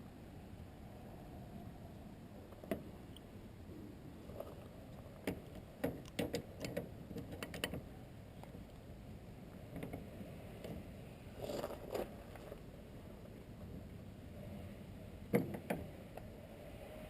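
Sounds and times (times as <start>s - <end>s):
small clicks and scrapes of handwork: 4.3s - 7.8s.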